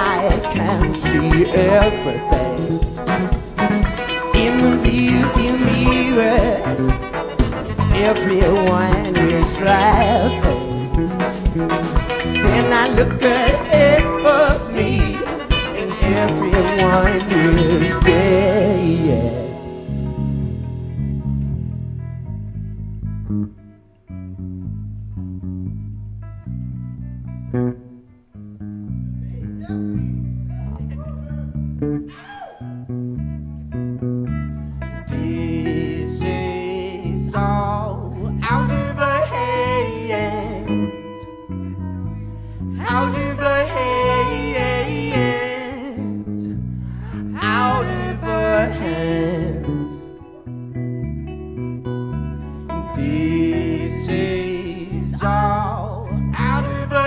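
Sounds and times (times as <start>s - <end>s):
live band playing: 0.0s - 23.0s, 46.8s - 57.0s
bass playing chords: 0.0s - 57.0s
guitar: 0.0s - 57.0s.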